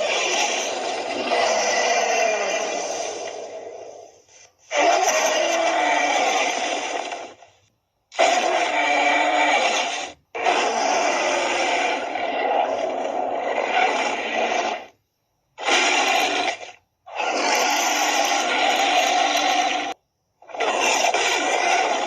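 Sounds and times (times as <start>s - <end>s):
dinosaur roaring: 0.0s - 7.4s, 8.2s - 14.9s, 15.6s - 22.0s.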